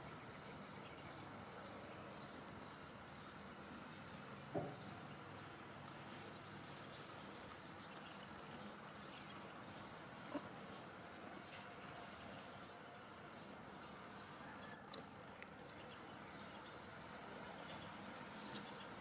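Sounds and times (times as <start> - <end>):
soft knock: 4.5 - 4.8.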